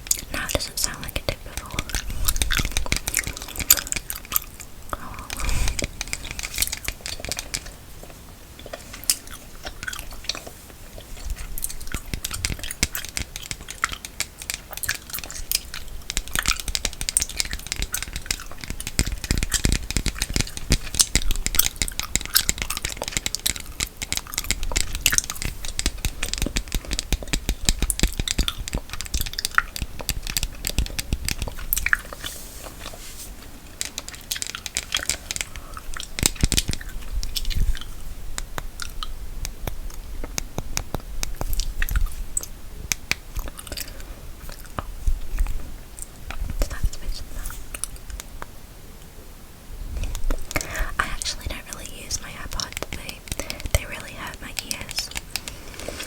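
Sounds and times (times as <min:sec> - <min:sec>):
gum chewing mouth clicks: 0:00.0 - 0:33.0, 0:33.7 - 0:48.5, 0:50.0 - 0:56.0.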